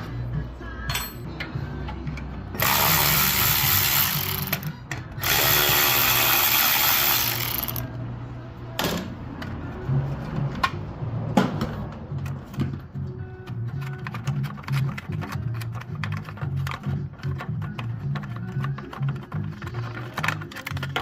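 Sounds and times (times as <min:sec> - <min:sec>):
cordless power tool running: 0:02.6 - 0:04.6, 0:05.2 - 0:07.8.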